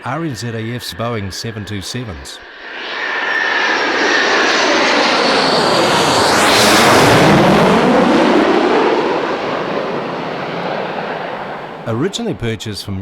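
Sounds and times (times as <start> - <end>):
jet airliner passing low: 1.0 - 12.6.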